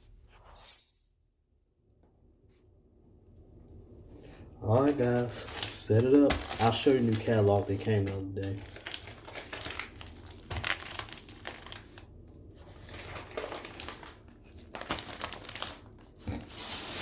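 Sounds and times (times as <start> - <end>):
packaging crinkling and rustling: 4.2 - 17.0.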